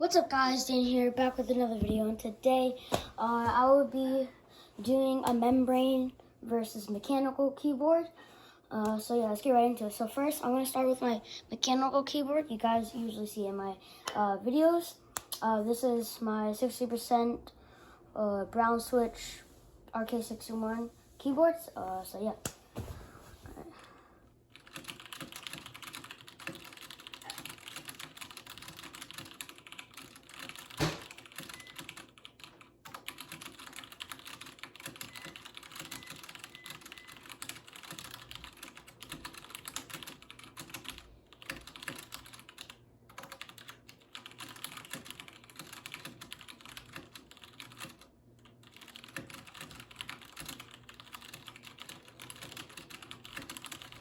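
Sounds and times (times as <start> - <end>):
typing on mechanical keyboard: 24.5 - 54.0.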